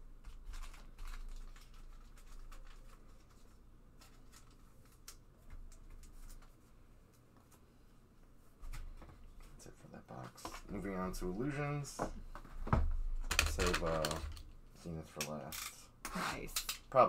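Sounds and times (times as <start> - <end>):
cards and packaging rustling: 0.2 - 7.3, 13.3 - 14.4.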